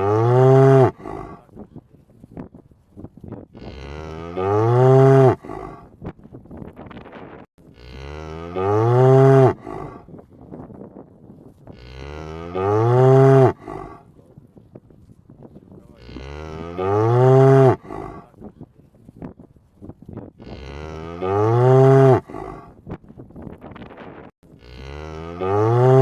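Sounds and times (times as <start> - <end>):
cow mooing: 0.0 - 1.4, 3.6 - 5.8, 7.7 - 10.0, 11.8 - 14.0, 16.0 - 18.3, 20.4 - 22.7, 24.6 - 26.0.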